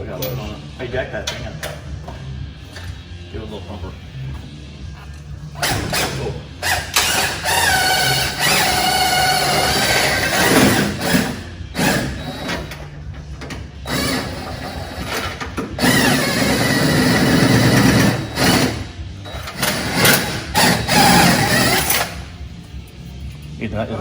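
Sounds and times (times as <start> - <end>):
impact wrench running: 5.6 - 22.4.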